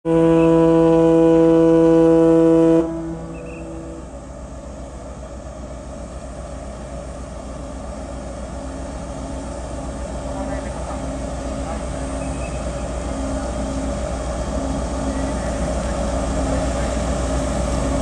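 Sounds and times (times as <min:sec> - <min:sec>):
ferry horn blast: 0:00.0 - 0:04.1.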